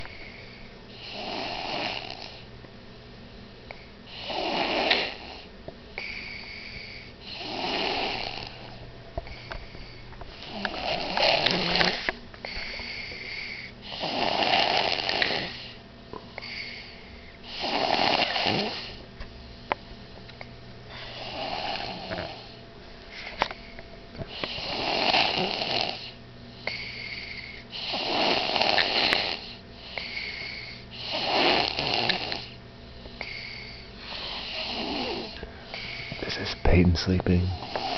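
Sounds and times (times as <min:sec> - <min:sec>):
person snoring: 0:01.0 - 0:02.4, 0:07.3 - 0:08.8, 0:10.4 - 0:12.1, 0:17.5 - 0:19.0, 0:21.1 - 0:22.6, 0:24.3 - 0:32.6, 0:33.2 - 0:36.5.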